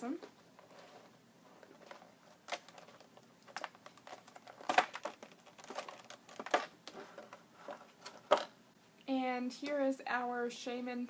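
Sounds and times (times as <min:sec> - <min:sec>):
plastic packaging clicking and crinkling: 0:00.0 - 0:08.6.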